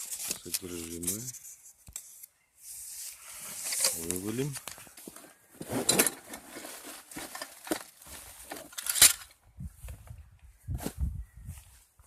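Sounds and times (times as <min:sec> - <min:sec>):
cardboard packaging rustling: 0:03.6 - 0:08.9.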